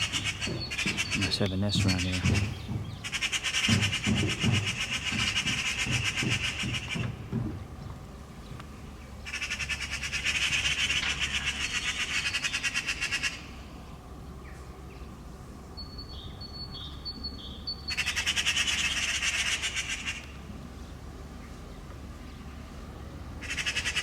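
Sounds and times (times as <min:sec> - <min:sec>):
magpies rattling chatter: 0:00.0 - 0:07.6, 0:09.2 - 0:13.6, 0:17.4 - 0:20.2, 0:23.4 - 0:24.0.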